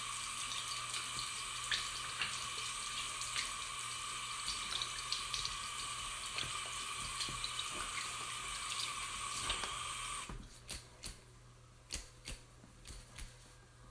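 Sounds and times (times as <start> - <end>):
tap water running into sink: 0.0 - 10.3
water drips: 0.2 - 3.7.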